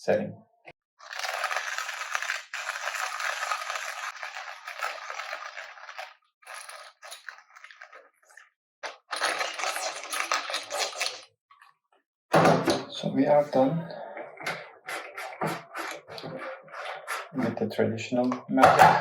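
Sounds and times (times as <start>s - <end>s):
hand grinder crushing coffee beans: 1.0s - 7.4s.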